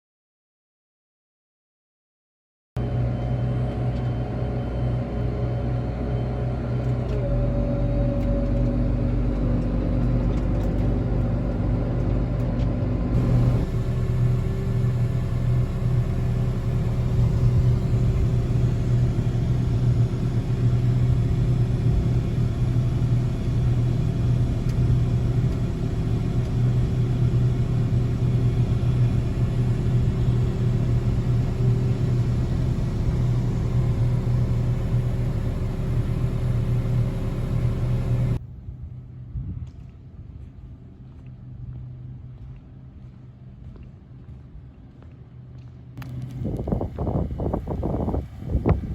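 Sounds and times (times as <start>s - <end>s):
diesel engine running: 2.8s - 38.4s, 45.6s - 48.9s
quiet low hum: 6.8s - 48.9s.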